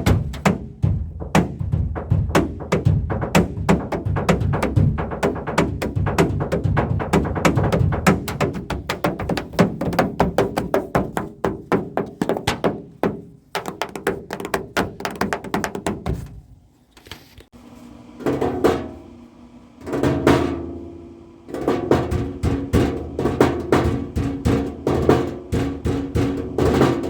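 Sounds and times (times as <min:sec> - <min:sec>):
drumming on household objects: 0:00.0 - 0:16.3, 0:21.5 - 0:27.0.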